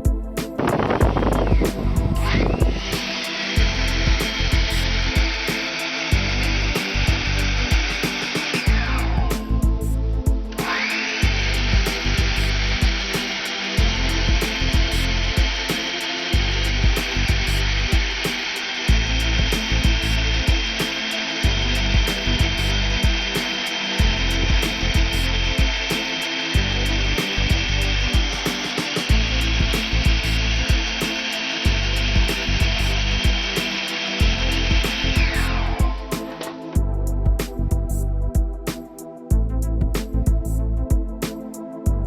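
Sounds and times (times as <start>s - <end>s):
background music with steady beat: 0.0s - 42.0s
hair dryer running: 2.2s - 9.1s, 10.5s - 36.8s.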